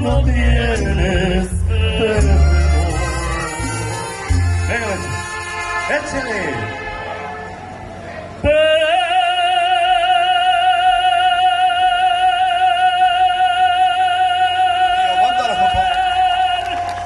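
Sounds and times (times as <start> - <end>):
singer holding long high note: 1.9 - 7.8.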